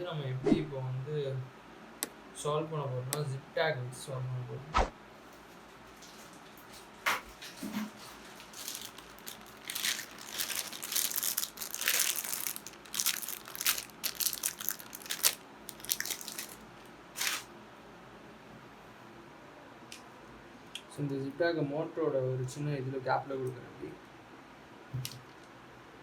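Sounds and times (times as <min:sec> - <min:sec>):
plastic zip ties crinkling: 0:07.4 - 0:17.5.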